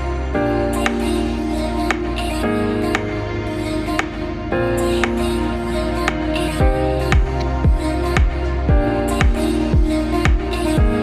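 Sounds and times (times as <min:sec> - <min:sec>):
soft synth chords: 0:00.0 - 0:11.0
electronic kick drum beat: 0:06.6 - 0:11.0.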